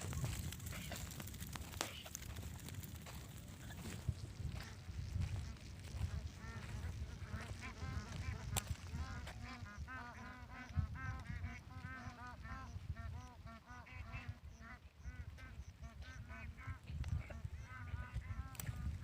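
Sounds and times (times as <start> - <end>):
waterfowl honking: 6.0 - 18.6.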